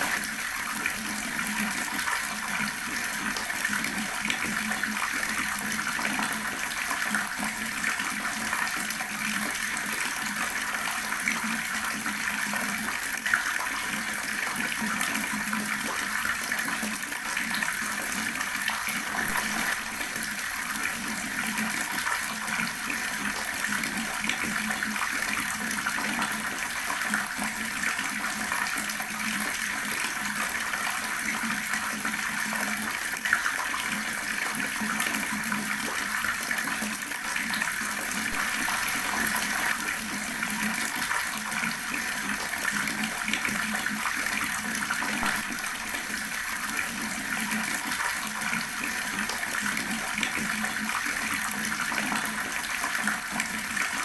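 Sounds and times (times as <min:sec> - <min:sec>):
water running from a tap: 0:00.0 - 0:54.0
water splashing: 0:19.0 - 0:20.6, 0:38.0 - 0:41.9, 0:45.2 - 0:46.1.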